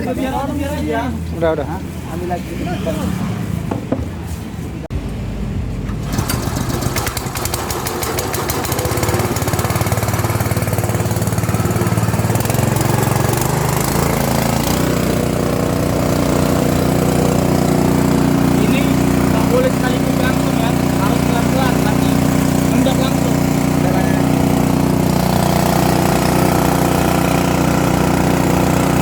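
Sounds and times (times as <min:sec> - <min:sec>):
small petrol engine running: 0:05.9 - 0:29.0.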